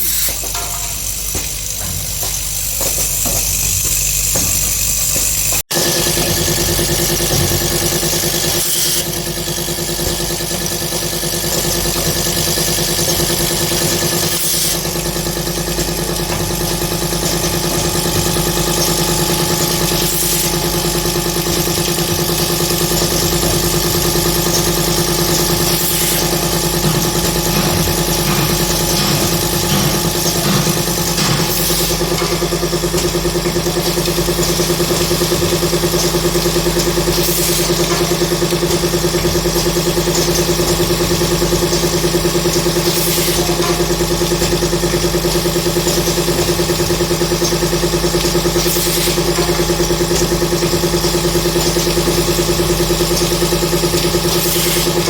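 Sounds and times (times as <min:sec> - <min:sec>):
machine motor hum: 0:00.0 - 0:55.0.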